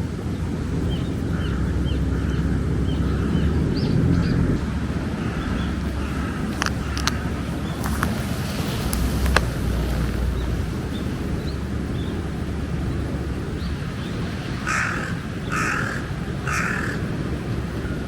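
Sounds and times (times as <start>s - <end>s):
low rumble: 0.2s - 13.7s
crow cawing: 5.2s - 8.1s, 14.6s - 17.1s.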